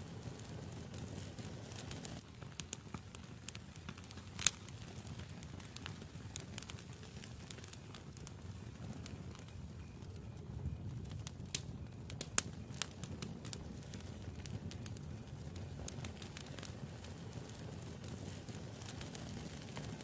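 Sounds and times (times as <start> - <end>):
campfire crackling and popping: 0.0 - 20.0.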